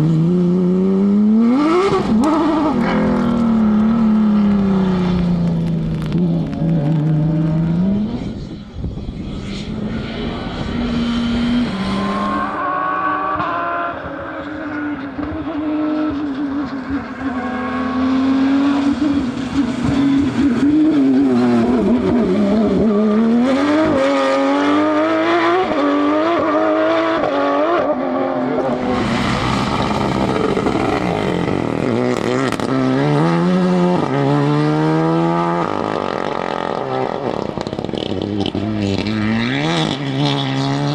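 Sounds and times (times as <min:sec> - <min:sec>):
rally car engines revving: 0:00.0 - 0:40.9
exhaust cracks: 0:05.0 - 0:07.7, 0:28.8 - 0:32.8.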